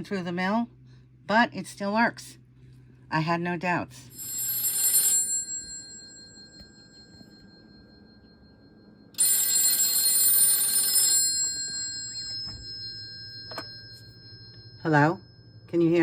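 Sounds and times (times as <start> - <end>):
rotary telephone bell ringing: 4.1 - 16.0.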